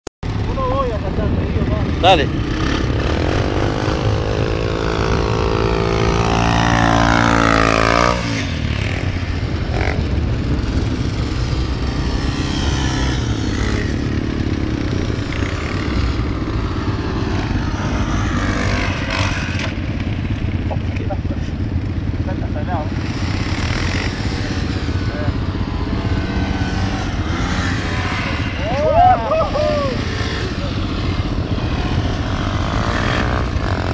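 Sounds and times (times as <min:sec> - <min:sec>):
quad bike engine revving: 0:00.3 - 0:33.9.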